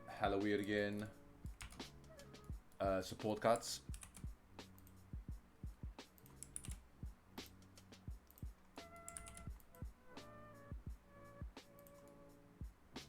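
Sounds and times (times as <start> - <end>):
faint background music: 0.0 - 13.0
keyboard keys clicking: 0.6 - 1.8, 2.7 - 4.2, 6.1 - 6.8, 8.2 - 9.8.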